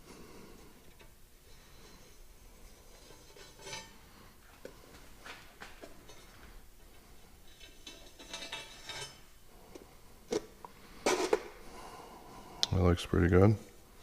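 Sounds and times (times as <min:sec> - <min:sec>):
metal scraping on steel: 0:01.0 - 0:04.2, 0:07.4 - 0:09.3.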